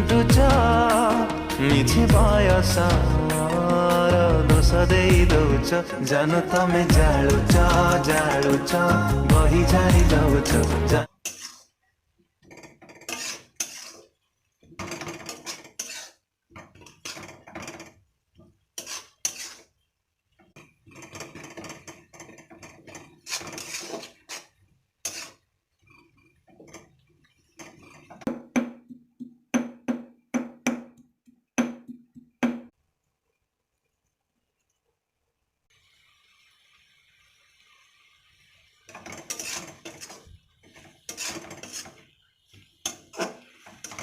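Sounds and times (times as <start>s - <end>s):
metal spatula scraping pan: 6.4s - 9.1s, 11.2s - 11.8s, 12.4s - 14.2s, 14.8s - 18.0s, 18.8s - 19.8s, 20.5s - 28.3s, 38.9s - 42.2s, 42.8s - 44.0s.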